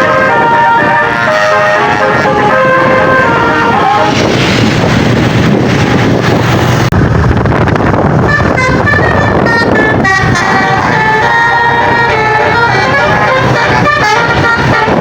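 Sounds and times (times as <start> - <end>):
bus musical horn: 0.0 - 4.5, 8.2 - 15.0
road noise: 0.0 - 15.0
rushing wind: 0.0 - 15.0.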